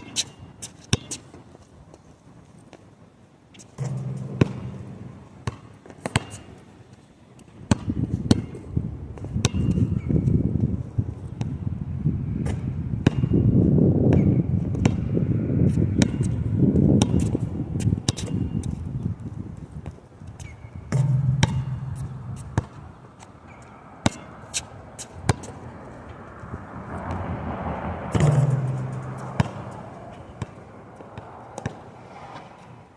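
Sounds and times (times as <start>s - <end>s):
low hum: 3.8s - 5.5s, 20.9s - 22.9s
basketball bouncing: 3.8s - 6.5s, 7.7s - 8.5s, 17.0s - 17.4s, 20.9s - 22.9s, 28.1s - 30.6s
wind buffeting microphone: 7.6s - 23.6s, 24.7s - 32.9s.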